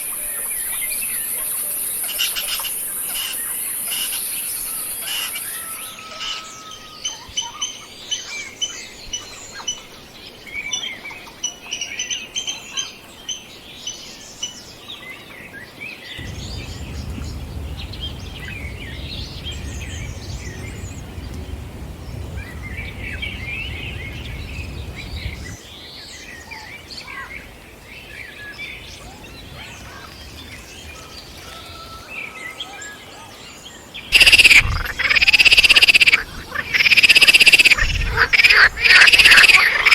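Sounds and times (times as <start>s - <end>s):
low rumble: 16.2s - 25.6s, 28.6s - 31.2s
short chirping bird calls: 16.2s - 25.6s.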